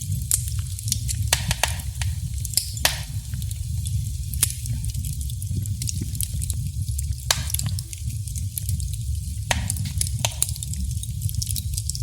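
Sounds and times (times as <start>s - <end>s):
fire snaps: 0.0s - 12.0s
wood fire crackling: 0.0s - 12.0s.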